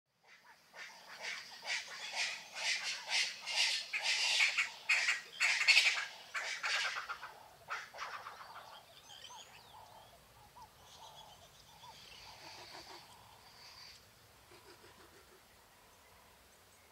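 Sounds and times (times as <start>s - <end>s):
birds squawking harshly: 0.8s - 14.0s.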